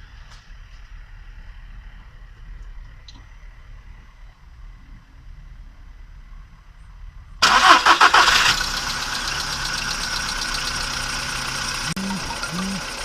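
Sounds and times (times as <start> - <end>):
car engine starting and idling: 0.0 - 13.0
engine lifter ticking: 7.4 - 13.0.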